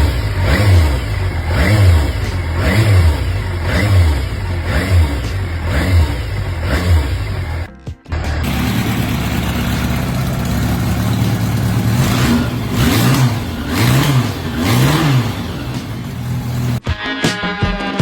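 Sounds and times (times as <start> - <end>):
motorcycle engine revving: 0.0 - 16.8
music: 1.8 - 8.5, 13.9 - 18.0.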